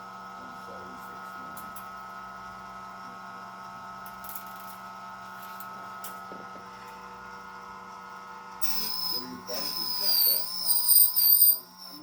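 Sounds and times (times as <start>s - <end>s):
steady machine hum: 4.8s - 12.0s.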